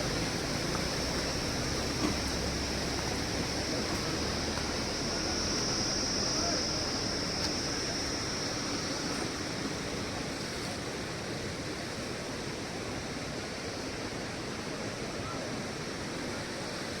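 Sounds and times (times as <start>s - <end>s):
rushing flowing water: 0.0s - 17.0s.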